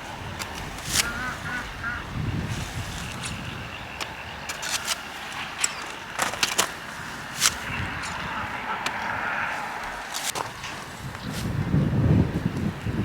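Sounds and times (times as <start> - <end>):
plant stems snapping by hand: 0.3 - 1.8, 2.6 - 10.6.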